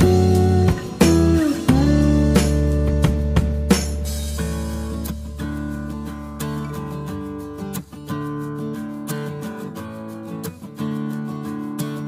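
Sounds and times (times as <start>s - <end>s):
sustained bass line: 0.0s - 7.1s
plucked guitar notes: 0.0s - 11.2s.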